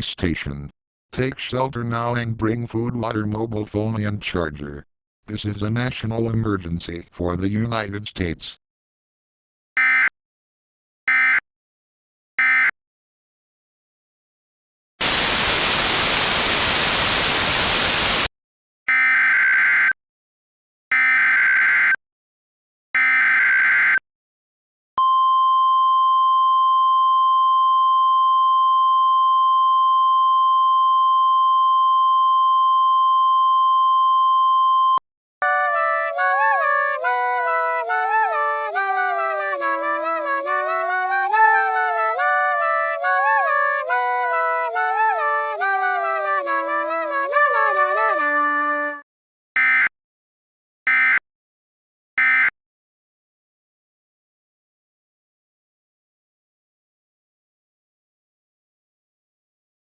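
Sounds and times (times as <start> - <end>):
digital data screech: 15.0 - 18.3
static hiss: 15.0 - 18.3
warbling data bursts: 15.0 - 18.3.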